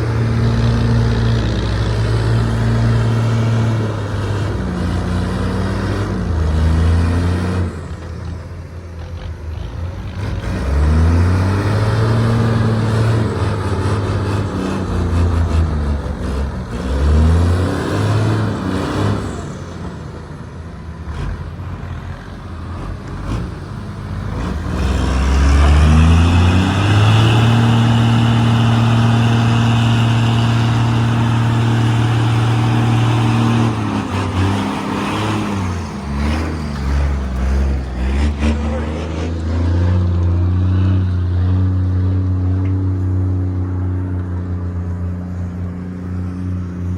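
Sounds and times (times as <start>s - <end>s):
heavy diesel engine revving: 0.0s - 46.0s.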